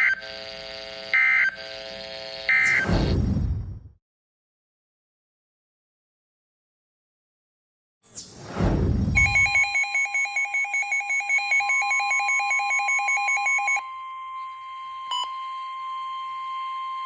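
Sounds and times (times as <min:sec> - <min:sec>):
rapidly pulsing electronic alarm: 0:00.0 - 0:03.6, 0:09.2 - 0:17.0
noise burst sweeping down: 0:02.6 - 0:04.0, 0:08.0 - 0:09.4
steady warning tone: 0:09.2 - 0:17.0.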